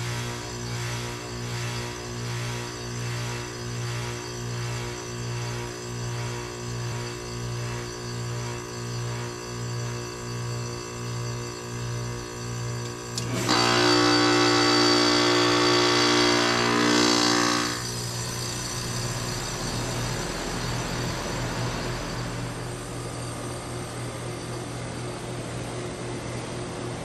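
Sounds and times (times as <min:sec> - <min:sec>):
heat pump unit humming: 0:00.0 - 0:27.0
valve click: 0:12.8 - 0:13.4
rush of refrigerant: 0:17.6 - 0:23.7.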